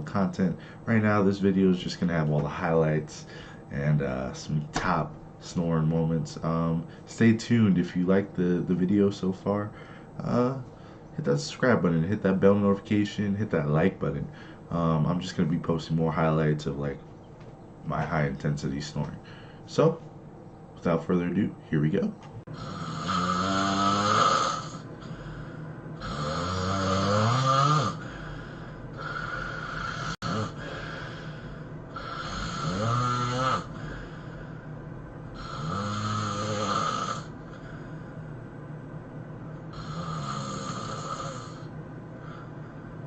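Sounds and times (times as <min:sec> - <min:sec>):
man snoring heavily: 0:22.5 - 0:34.6, 0:35.4 - 0:37.8, 0:39.7 - 0:41.7.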